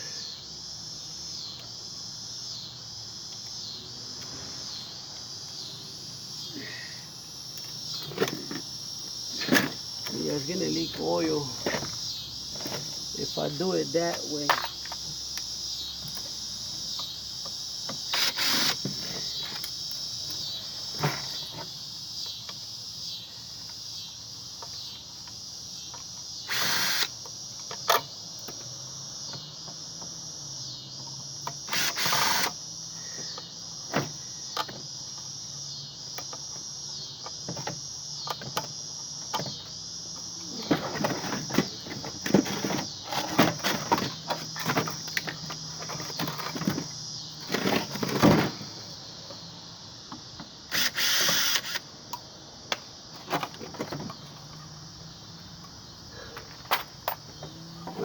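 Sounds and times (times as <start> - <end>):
insect chorus: 0.0 - 58.0
hand tools clicking and clanking: 55.5 - 58.0.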